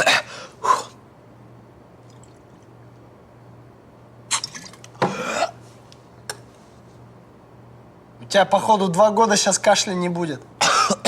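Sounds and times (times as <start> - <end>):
low steady hum: 0.0 - 11.0
man gasping and coughing: 10.6 - 11.0.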